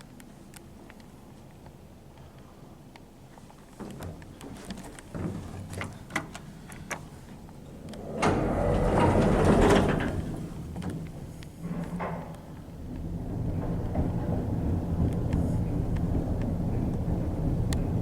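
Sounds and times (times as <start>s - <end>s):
lift doors sliding: 7.4s - 18.0s.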